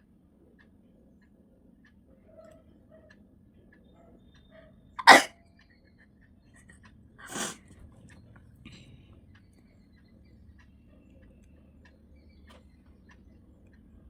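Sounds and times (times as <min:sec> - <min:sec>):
person sneezing: 0:05.0 - 0:05.3, 0:07.3 - 0:07.6.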